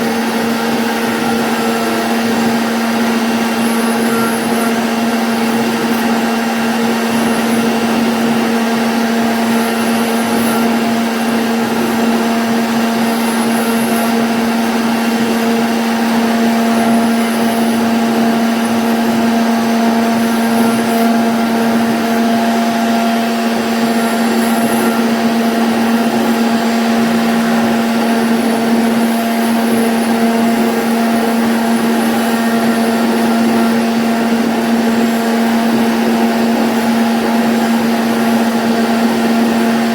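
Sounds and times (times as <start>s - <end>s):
router spindle whining: 0.0s - 39.9s.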